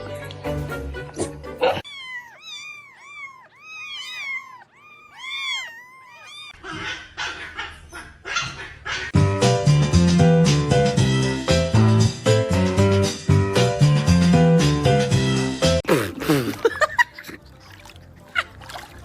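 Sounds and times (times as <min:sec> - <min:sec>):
young pet whimpering: 0:01.7 - 0:06.9.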